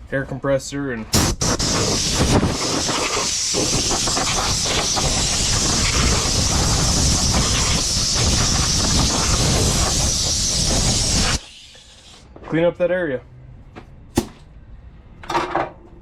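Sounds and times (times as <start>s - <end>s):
air blow gun hissing: 1.2s - 12.2s.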